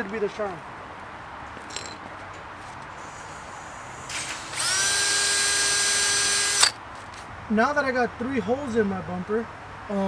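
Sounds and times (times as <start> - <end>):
electric drill whining: 3.0 - 6.8.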